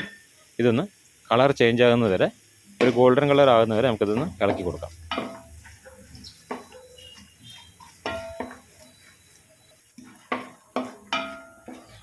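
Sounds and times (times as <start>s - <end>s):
spoon clinking on metal pan: 0.0s - 0.3s, 4.1s - 8.7s, 10.3s - 12.0s
spoon scraping pan: 2.8s - 12.0s.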